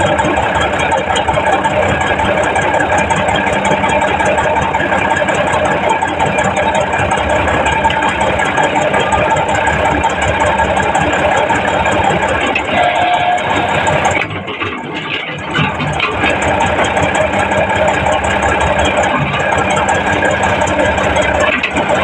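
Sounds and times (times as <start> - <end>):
heavy diesel engine running: 0.0 - 22.0
steady tone: 3.7 - 14.7.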